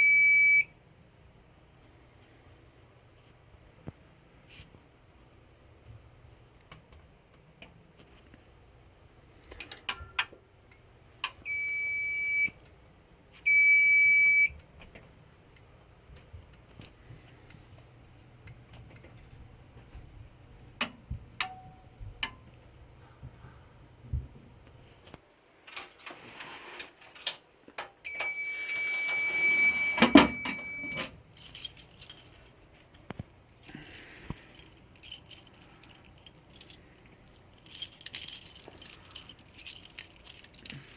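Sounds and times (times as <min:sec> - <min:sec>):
fire alarm panel buzzer beeping: 0:00.0 - 0:00.7, 0:11.4 - 0:12.6, 0:13.5 - 0:14.6, 0:28.1 - 0:31.1
keys jangling: 0:30.9 - 0:32.6, 0:33.6 - 0:40.9.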